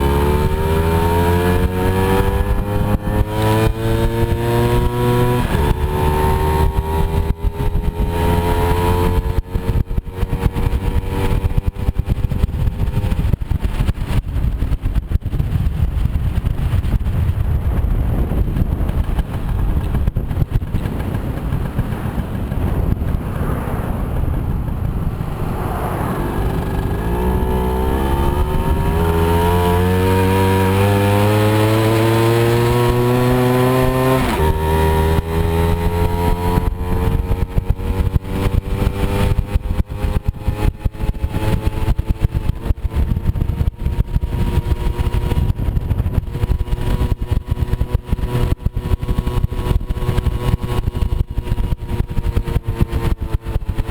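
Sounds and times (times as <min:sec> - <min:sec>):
moped engine revving: 0:00.0 - 0:53.9
rough rushing noise: 0:00.0 - 0:53.9.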